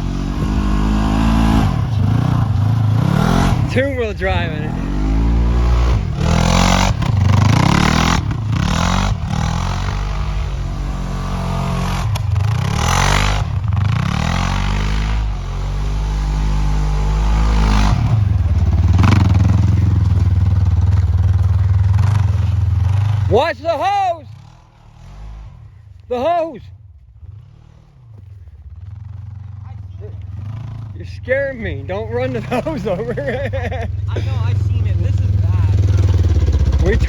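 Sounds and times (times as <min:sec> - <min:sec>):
off-road vehicle engine revving: 0:00.0 - 0:37.0
wheels spinning in snow: 0:24.5 - 0:37.0.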